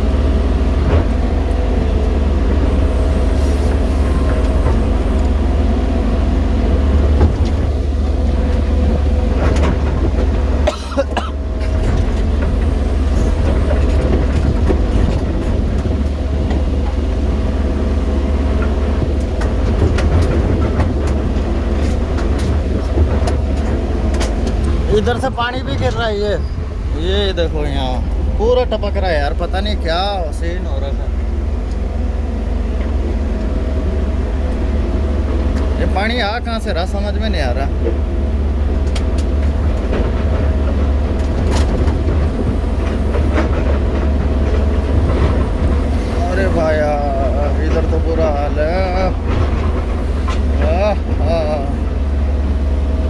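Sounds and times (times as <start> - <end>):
excavator diesel engine droning: 0.0 - 53.0.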